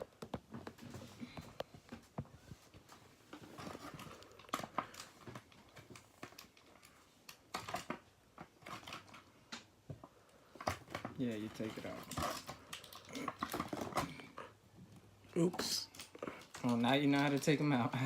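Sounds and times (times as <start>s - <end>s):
clicks and taps: 0.0s - 2.4s
plastic packaging crinkling: 15.6s - 18.0s.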